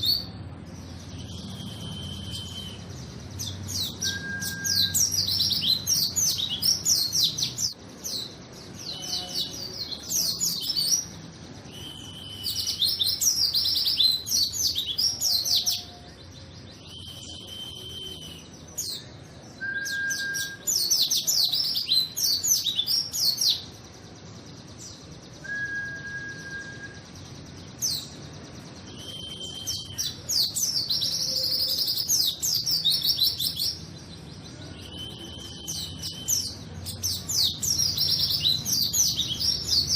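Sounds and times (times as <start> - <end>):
bird twittering song: 0.0 - 39.9
short whistled bird notes: 4.0 - 5.6, 16.8 - 18.5, 25.4 - 27.1, 28.8 - 30.1.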